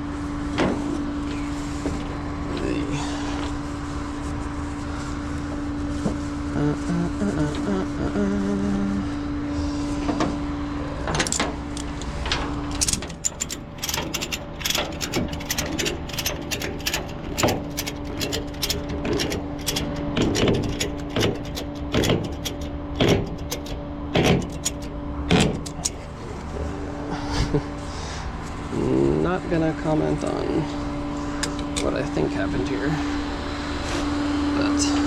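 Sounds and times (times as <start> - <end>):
low mechanical hum: 0.0 - 35.0
metallic clicks and clanks: 11.1 - 26.0.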